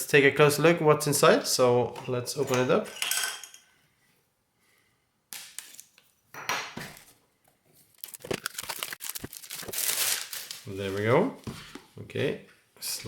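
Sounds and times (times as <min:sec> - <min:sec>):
crinkling and tapping: 0:06.9 - 0:09.8
cardboard packaging handled: 0:07.8 - 0:11.1.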